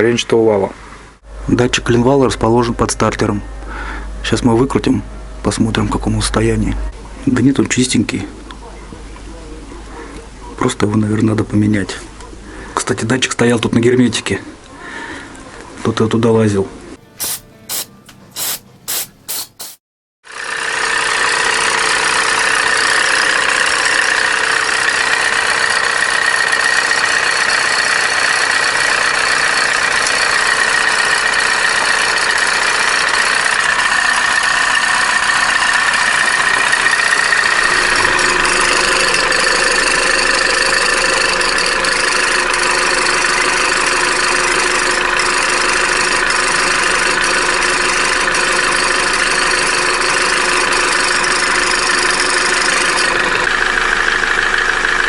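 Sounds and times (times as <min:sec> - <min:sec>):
car engine idling: 0:22.0 - 0:55.0
high steady whine: 0:35.2 - 0:55.0.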